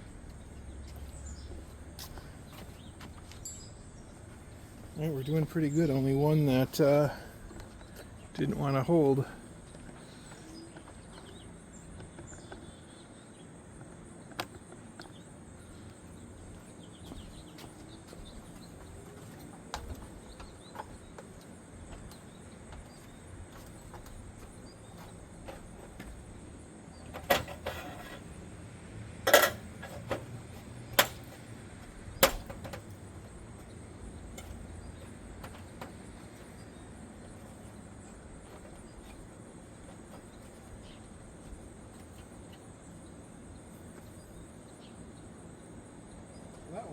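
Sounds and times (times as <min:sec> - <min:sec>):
tools knocking on gutter: 0:29.3 - 0:31.4, 0:32.2 - 0:32.9.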